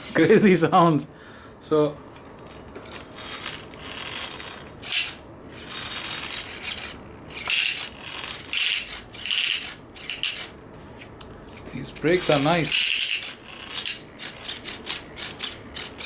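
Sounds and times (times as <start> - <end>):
throttle linkage rasping and scraping: 2.4 - 10.5, 12.0 - 16.0.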